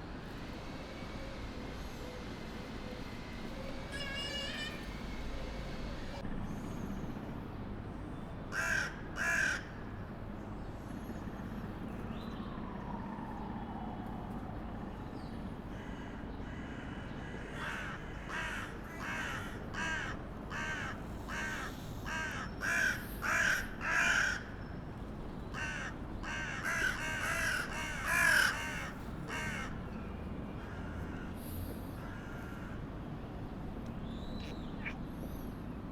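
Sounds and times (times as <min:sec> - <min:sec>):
crow cawing: 0:08.5 - 0:09.7, 0:15.7 - 0:24.5, 0:25.6 - 0:29.8.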